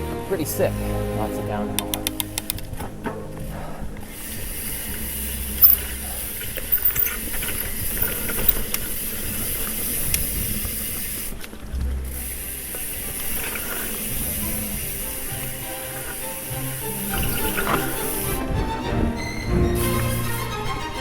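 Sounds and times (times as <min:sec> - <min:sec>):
bike tyre and wind rush: 0:00.0 - 0:21.0.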